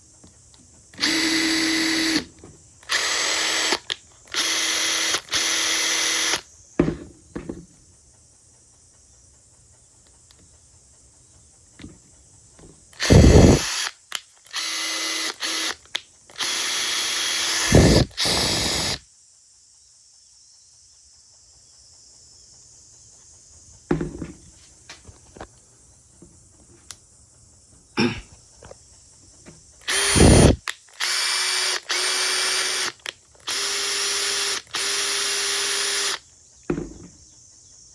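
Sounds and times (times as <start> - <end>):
impact driver motor whirring: 1.0 - 6.4, 13.0 - 19.0, 29.8 - 36.9
small clicks: 12.9 - 19.0, 29.8 - 36.2.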